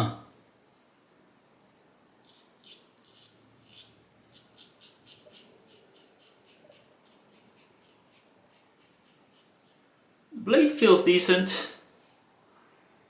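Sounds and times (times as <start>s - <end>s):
razor scraping stubble: 0.3s - 9.9s.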